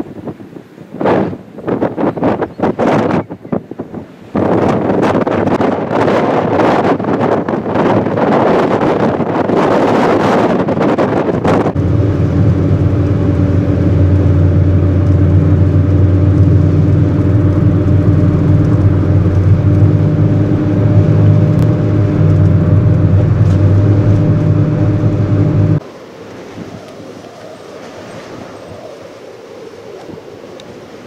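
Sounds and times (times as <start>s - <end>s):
car engine and road hum: 11.7s - 26.0s.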